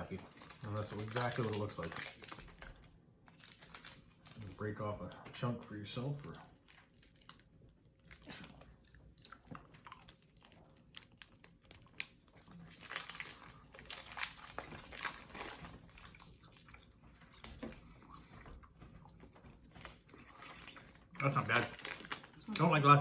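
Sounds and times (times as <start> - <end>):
candy wrapper crinkling: 0.0 - 17.9, 19.5 - 23.0
people chewing candy: 0.0 - 23.0.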